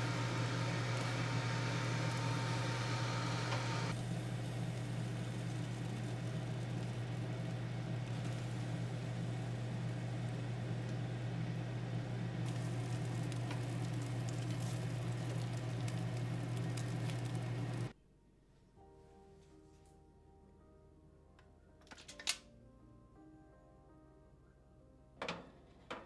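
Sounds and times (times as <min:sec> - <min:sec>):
appliance electrical hum: 0:00.0 - 0:18.0.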